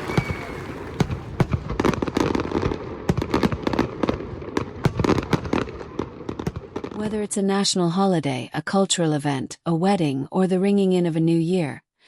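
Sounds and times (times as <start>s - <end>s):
fireworks bangs and crackles: 0.0s - 7.5s.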